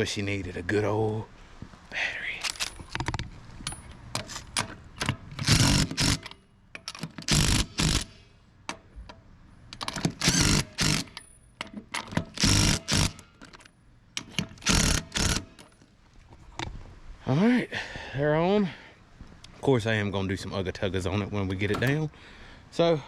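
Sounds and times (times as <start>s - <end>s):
cordless drill spinning lug nuts: 5.3s - 6.3s, 7.1s - 8.1s, 10.0s - 11.2s, 12.2s - 13.4s, 14.4s - 15.7s.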